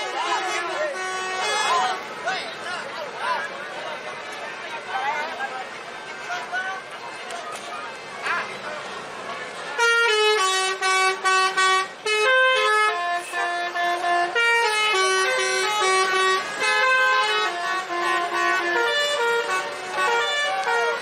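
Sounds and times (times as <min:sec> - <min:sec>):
musical air horn playing a tune: 0:00.1 - 0:02.0, 0:09.8 - 0:21.0.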